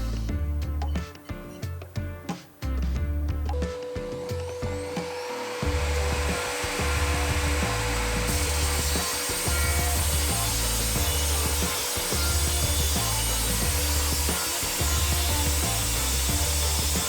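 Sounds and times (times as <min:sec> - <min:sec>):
music with pulsing bass: 0:00.0 - 0:01.2, 0:05.6 - 0:17.0
saw cutting masonry: 0:03.5 - 0:17.0.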